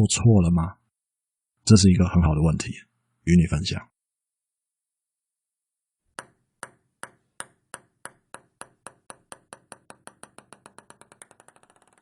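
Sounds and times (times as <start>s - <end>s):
ball bouncing on hard surface: 6.1s - 12.0s.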